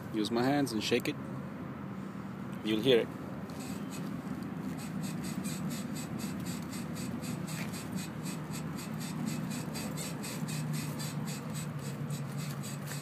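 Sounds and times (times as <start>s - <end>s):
car suspension squeaking: 3.4s - 13.0s.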